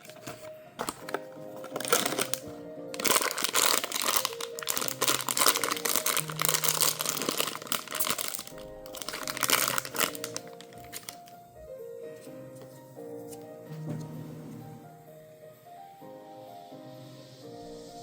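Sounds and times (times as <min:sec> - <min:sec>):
packaging crinkling: 0:00.0 - 0:11.4
background music: 0:00.0 - 0:18.0.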